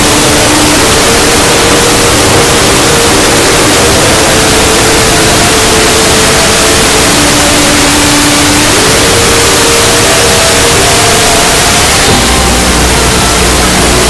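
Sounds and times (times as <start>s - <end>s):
faint held notes: 0.0s - 14.0s
harshly distorted hiss: 0.0s - 14.0s.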